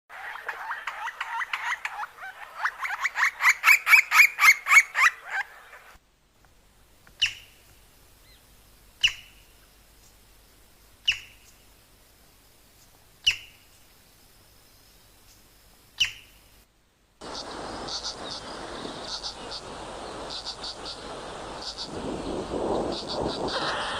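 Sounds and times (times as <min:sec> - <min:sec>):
woodpecker calling: 0:00.2 - 0:05.9, 0:07.2 - 0:08.4, 0:09.0 - 0:09.6, 0:11.0 - 0:11.6, 0:13.2 - 0:13.7, 0:17.2 - 0:23.9.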